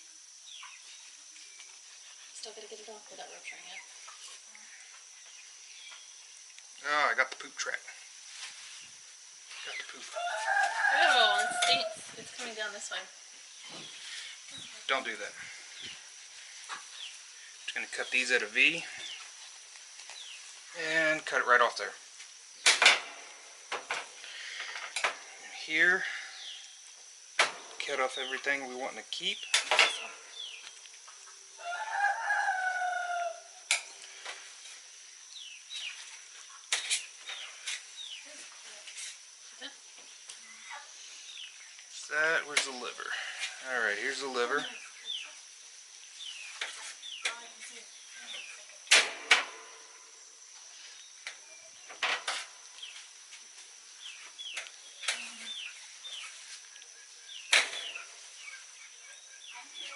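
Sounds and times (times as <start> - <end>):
small birds chirping: 0.4 - 7.2, 13.2 - 22.7, 24.2 - 27.0, 27.7 - 31.6, 35.1 - 48.9, 52.6 - 53.2, 53.9 - 59.9
rooster crowing: 10.0 - 12.1, 31.5 - 33.7.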